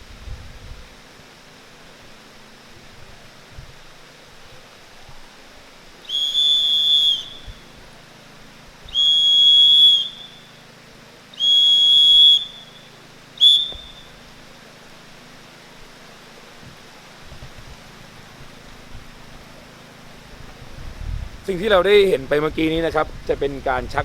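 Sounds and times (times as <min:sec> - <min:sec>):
steady background hiss: 0:00.0 - 0:24.0
whistle blasts: 0:06.0 - 0:07.8, 0:08.9 - 0:10.7, 0:11.3 - 0:14.4.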